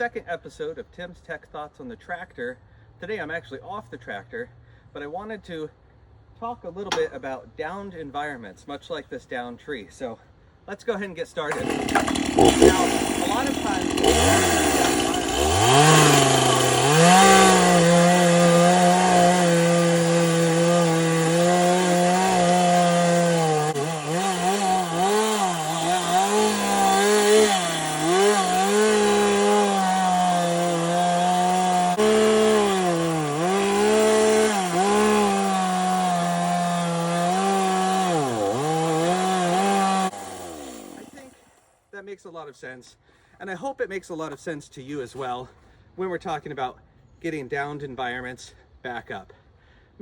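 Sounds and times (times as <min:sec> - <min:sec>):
chainsaw cutting into tree: 0:11.5 - 0:41.8.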